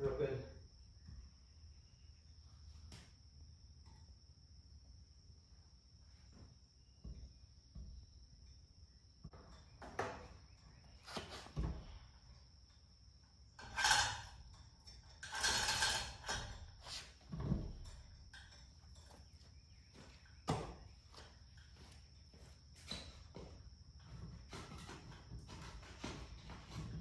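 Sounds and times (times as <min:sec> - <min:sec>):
cricket trill: 0:00.0 - 0:27.0
metal scraping rattles: 0:13.6 - 0:19.2.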